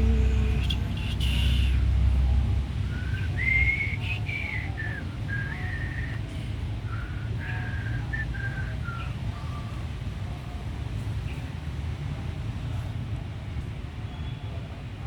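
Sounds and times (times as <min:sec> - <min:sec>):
low background rumble: 0:00.0 - 0:09.7
person whistling a tune: 0:02.9 - 0:06.2, 0:07.0 - 0:09.2.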